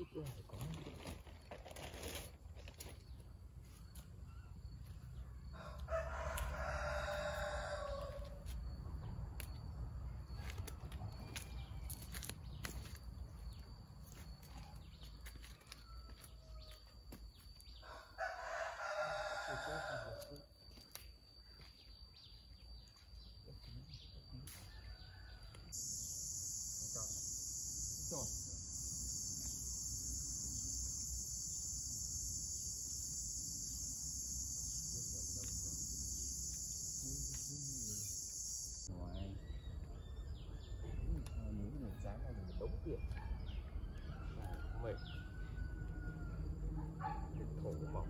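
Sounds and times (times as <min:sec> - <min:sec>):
high-pitched insect drone: 0:00.0 - 0:21.7, 0:22.9 - 0:39.4
rooster crowing: 0:05.4 - 0:08.5, 0:17.8 - 0:20.5, 0:24.6 - 0:37.0, 0:43.5 - 0:47.2.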